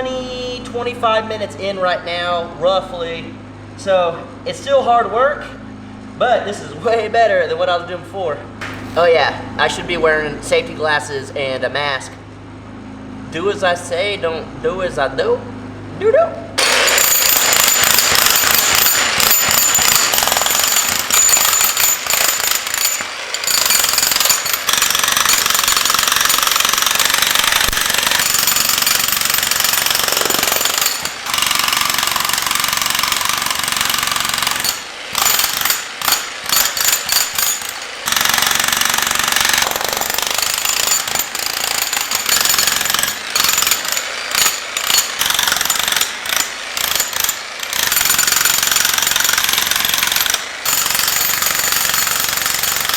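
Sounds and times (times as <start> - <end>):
jackhammer hammering concrete: 8.6 - 9.3, 16.6 - 52.9.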